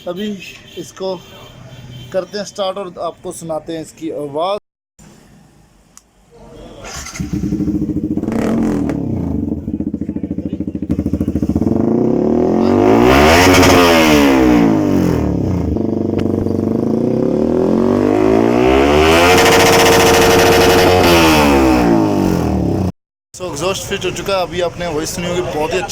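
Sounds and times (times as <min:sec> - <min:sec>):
motorcycle engine revving: 0:06.8 - 0:22.9.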